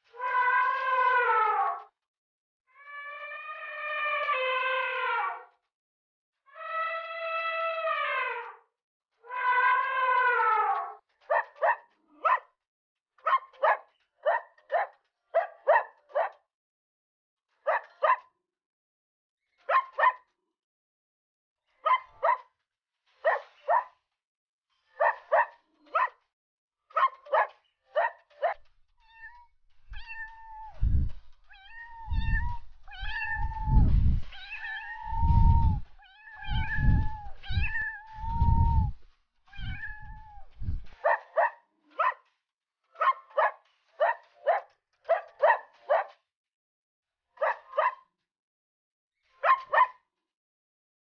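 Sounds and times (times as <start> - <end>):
cat meowing: 2.8 - 5.2, 9.3 - 10.9, 29.0 - 40.6
low rumbling: 29.8 - 34.2, 34.9 - 39.0.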